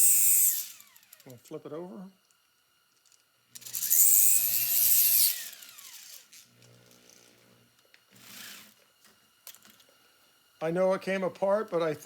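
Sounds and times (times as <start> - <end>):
motor whine spinning down: 0.1 - 1.2, 3.7 - 6.4
rotary tool grinding: 3.6 - 7.3, 8.1 - 8.8.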